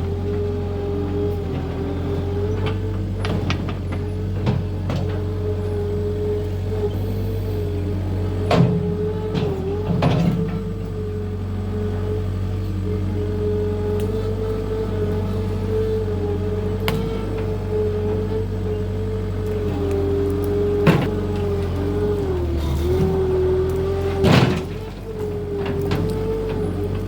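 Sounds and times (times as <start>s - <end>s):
skid steer engine running: 0.0s - 27.0s.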